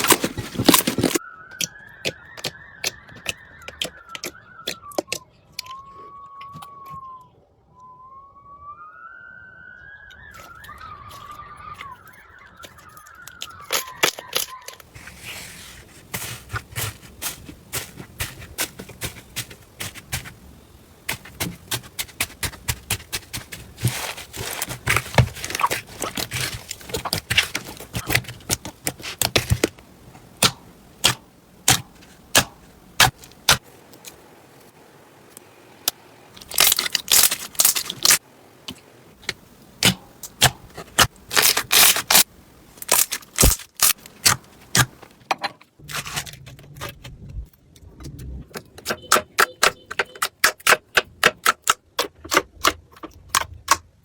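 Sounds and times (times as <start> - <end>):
wavering high squeal: 1.2 - 14.7
slime crackling when squished: 36.4 - 38.2.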